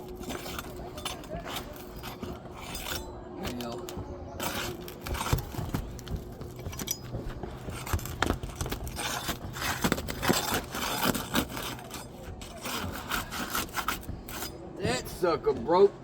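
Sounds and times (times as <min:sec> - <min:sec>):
metal bar scraping under shingles: 0:00.0 - 0:15.9
shingles cracking and snapping: 0:07.7 - 0:14.0.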